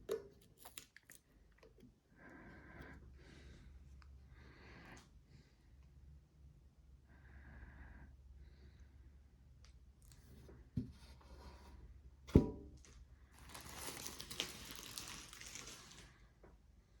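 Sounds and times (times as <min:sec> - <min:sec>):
wrapping crinkling and tearing: 0:00.4 - 0:01.3, 0:13.4 - 0:16.3.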